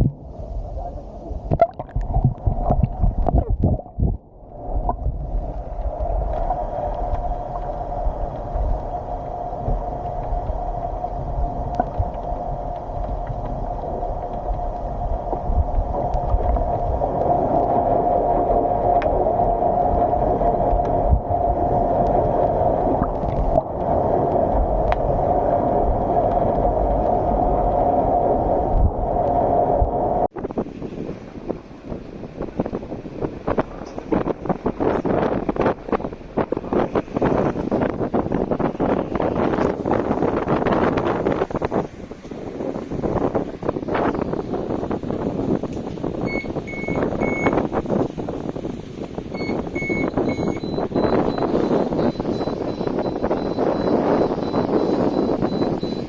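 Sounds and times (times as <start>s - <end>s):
water rushing along hull: 0.0s - 56.0s
boat engine droning: 13.6s - 56.0s.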